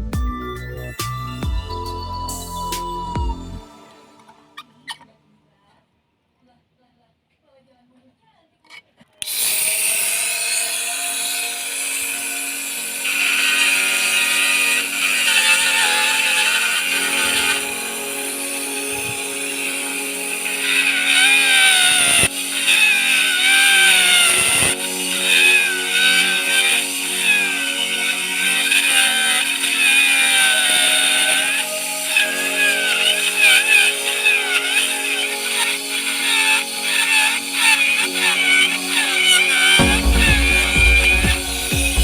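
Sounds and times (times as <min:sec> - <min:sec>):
small power tool motor whining: 0:09.2 - 0:39.9.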